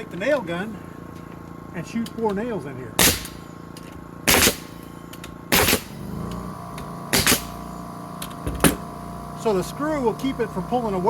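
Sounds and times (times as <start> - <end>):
nail gun shots into wood: 3.0 - 3.5, 4.2 - 6.4, 7.1 - 8.8.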